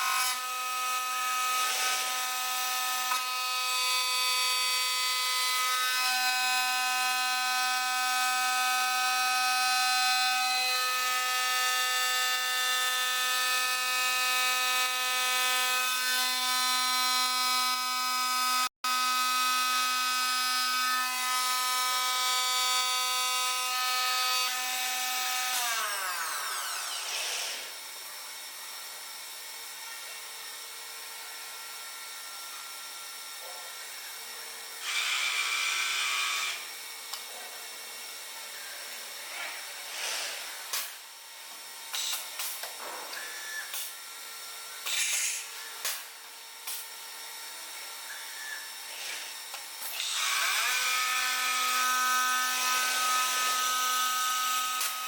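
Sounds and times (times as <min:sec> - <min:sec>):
machine spindle high whine: 0:43.0 - 0:55.0.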